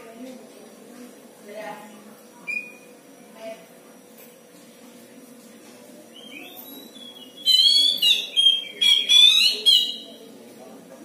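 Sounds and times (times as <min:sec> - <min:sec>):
bird singing whistled phrases: 0:02.5 - 0:02.9, 0:06.1 - 0:10.2.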